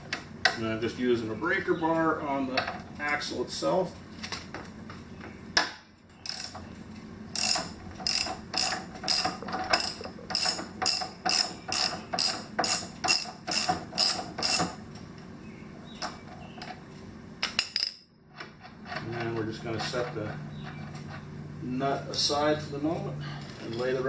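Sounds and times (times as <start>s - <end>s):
ratchet wrench clicking: 6.2s - 6.6s, 7.3s - 14.7s.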